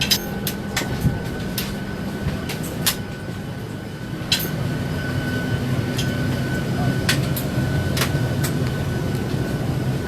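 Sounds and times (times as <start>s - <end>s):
airliner engine rumble: 0.0s - 10.0s.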